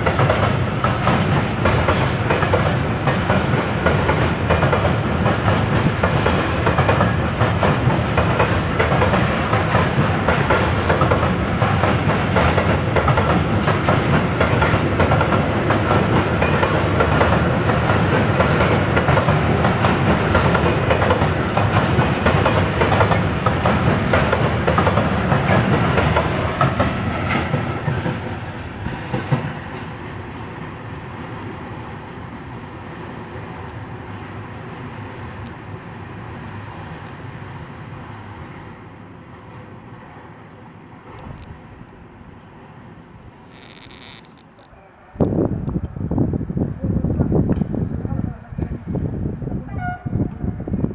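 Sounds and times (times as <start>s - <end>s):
train passing: 0.0s - 50.9s
wheels clattering over rail joints: 43.4s - 44.8s.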